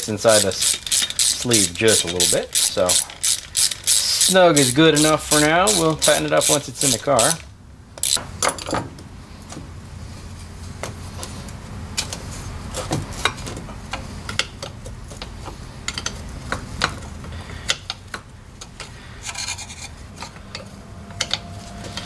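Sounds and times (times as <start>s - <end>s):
tools clicking and tapping on metal: 0.0s - 8.8s, 12.8s - 17.0s
low steady hum: 18.2s - 22.0s.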